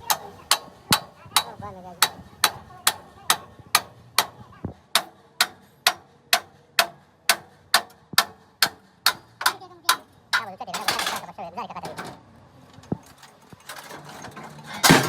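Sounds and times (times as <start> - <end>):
hammer striking metal: 0.0 - 11.2.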